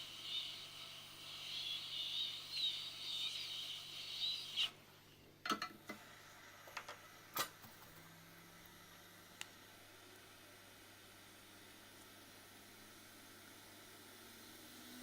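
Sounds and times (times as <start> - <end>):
hot-air station blowing hiss: 0.0 - 4.8.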